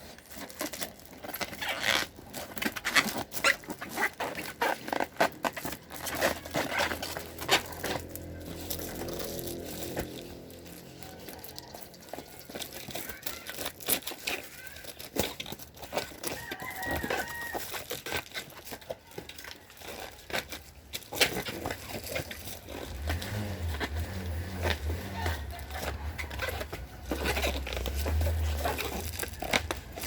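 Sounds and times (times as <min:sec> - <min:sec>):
packaging clicks and rustles: 0:00.0 - 0:30.0.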